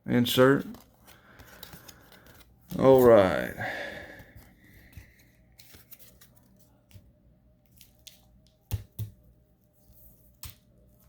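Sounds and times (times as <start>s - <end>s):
rustling of cards and wrappers: 0.2s - 8.6s.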